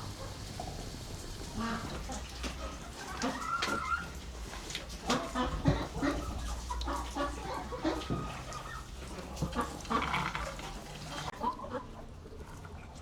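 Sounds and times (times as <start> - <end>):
chickens clucking: 0.0 - 12.1.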